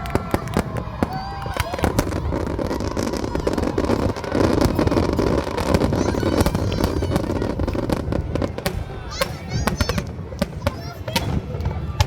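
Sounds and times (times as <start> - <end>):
fireworks popping and crackling: 0.0 - 12.0.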